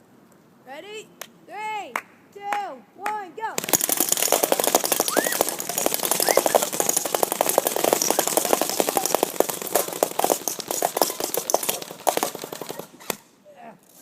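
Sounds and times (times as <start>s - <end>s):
airsoft guns firing automatic: 3.6s - 13.2s
pellets striking cans: 3.6s - 13.3s.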